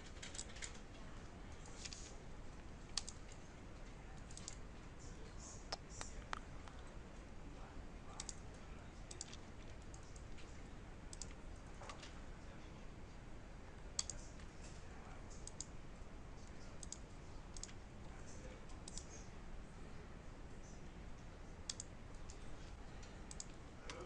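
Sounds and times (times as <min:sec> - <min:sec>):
computer mouse clicks: 0:00.0 - 0:00.8, 0:02.9 - 0:03.4, 0:04.2 - 0:04.6, 0:08.2 - 0:10.5, 0:11.1 - 0:12.2, 0:13.9 - 0:15.8, 0:16.4 - 0:17.8, 0:18.6 - 0:19.2, 0:21.6 - 0:24.0
low steady hum: 0:00.0 - 0:24.0.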